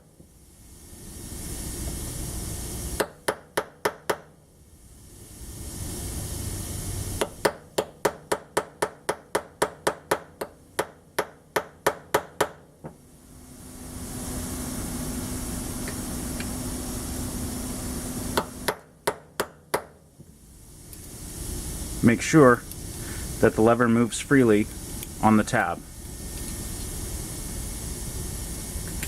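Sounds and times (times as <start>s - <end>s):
steady hiss: 0.0s - 3.2s, 4.6s - 8.9s, 12.9s - 18.8s, 20.1s - 29.0s
hammer tapping metal punch: 7.2s - 12.7s.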